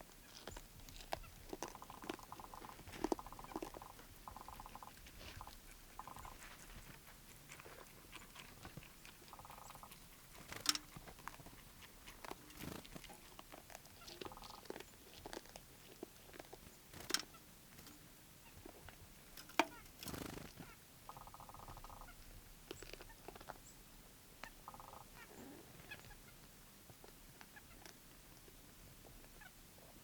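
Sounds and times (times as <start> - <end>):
small crunching and clicking: 0.0 - 20.7, 21.6 - 23.7.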